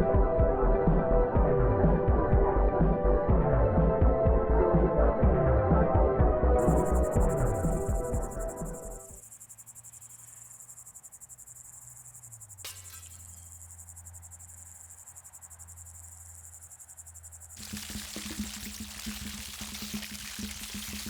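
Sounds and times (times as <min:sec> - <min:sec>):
crickets chirping: 0:06.6 - 0:21.0.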